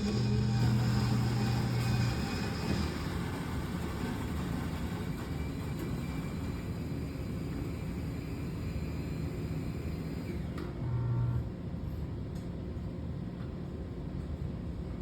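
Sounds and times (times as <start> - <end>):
coffee machine humming: 0.0 - 11.7.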